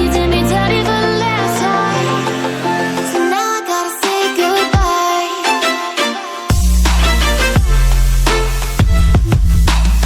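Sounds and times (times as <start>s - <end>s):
singing: 0.0s - 6.5s
hip-hop track with heavy bass: 0.0s - 10.0s.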